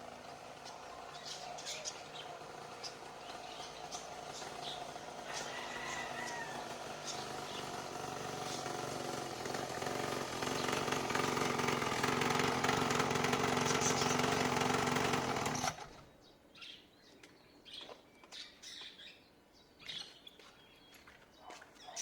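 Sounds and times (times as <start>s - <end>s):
small atv engine running: 0.0s - 16.2s
faint birds chirping: 0.0s - 22.0s.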